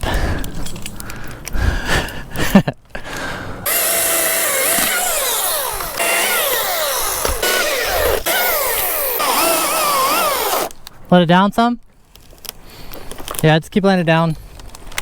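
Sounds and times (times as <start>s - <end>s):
chainsaw cutting wood: 3.6s - 10.8s.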